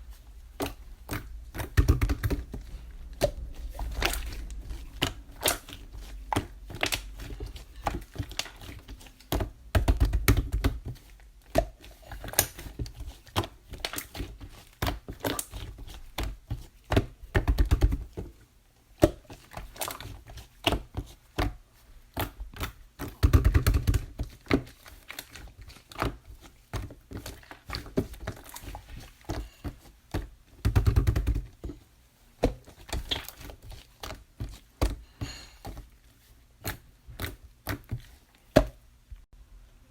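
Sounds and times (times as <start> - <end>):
deep slime squish: 0.0 - 38.8.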